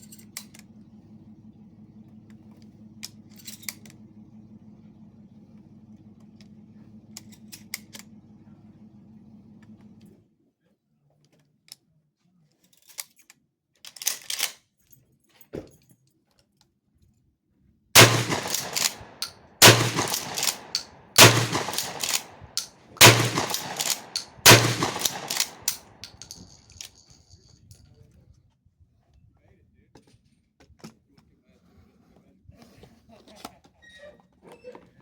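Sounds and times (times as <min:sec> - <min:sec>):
gun handling clicks and rattles: 0:12.8 - 0:14.6, 0:18.0 - 0:27.6
shotgun shots: 0:18.0 - 0:26.6
shotgun action clatter: 0:18.0 - 0:27.2.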